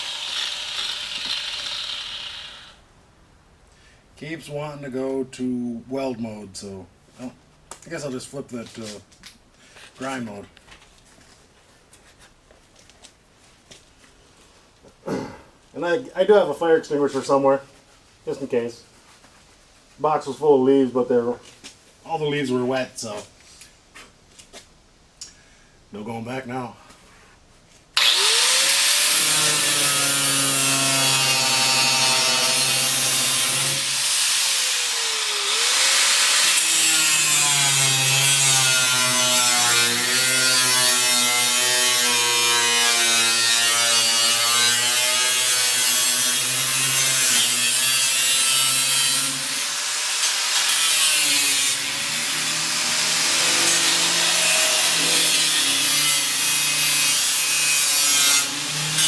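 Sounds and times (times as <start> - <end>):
angle grinder cutting sheet steel: 0.0 - 2.8, 28.0 - 59.0.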